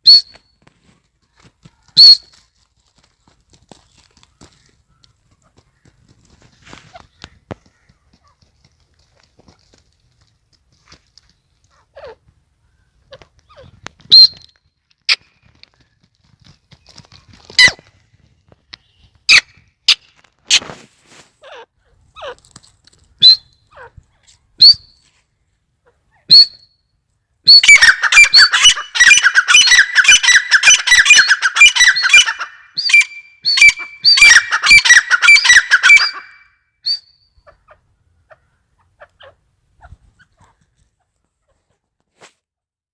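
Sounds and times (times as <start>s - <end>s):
francolin calling: 27.5s - 37.7s.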